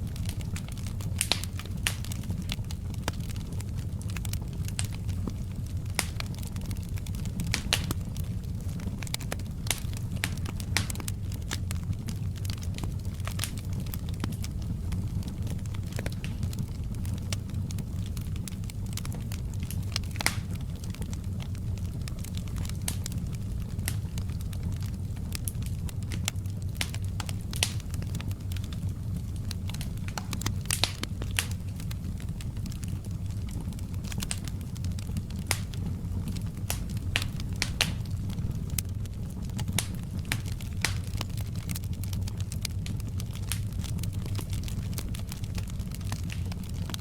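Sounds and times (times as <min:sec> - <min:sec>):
wood fire crackling: 0:00.0 - 0:47.0.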